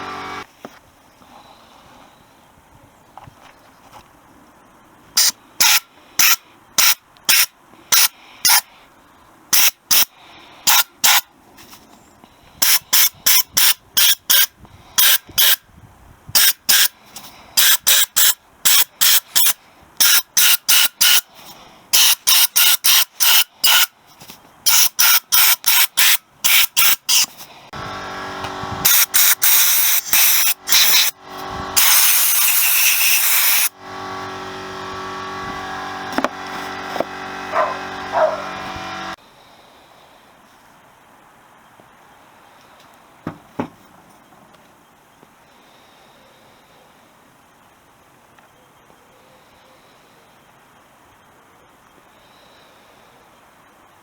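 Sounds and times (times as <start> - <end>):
pitched running sound: 0.0 - 0.5, 24.8 - 39.2.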